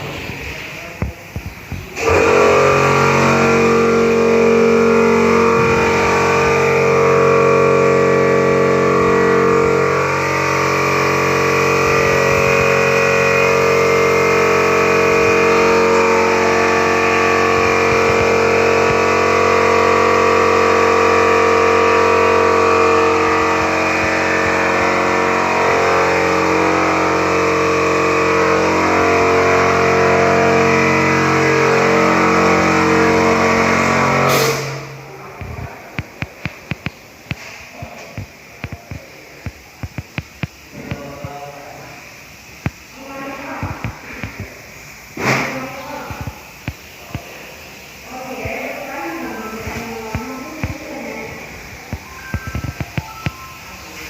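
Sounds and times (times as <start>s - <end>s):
music of sustained chords: 48.9s - 54.0s.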